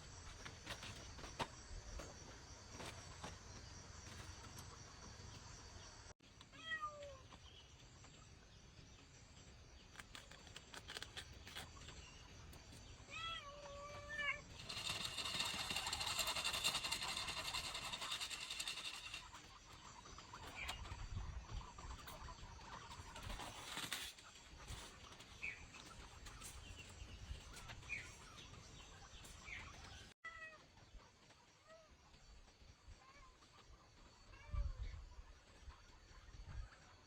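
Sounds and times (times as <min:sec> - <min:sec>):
loud rough noise: 0:14.5 - 0:19.4.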